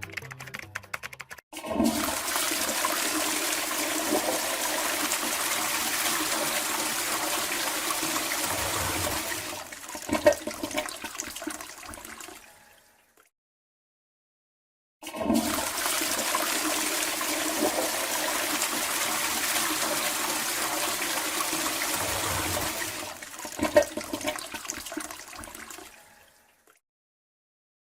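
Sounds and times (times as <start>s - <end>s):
toilet bowl gurgling: 1.6s - 12.5s, 15.0s - 26.1s
toilet flushing: 1.6s - 12.6s, 15.0s - 26.2s.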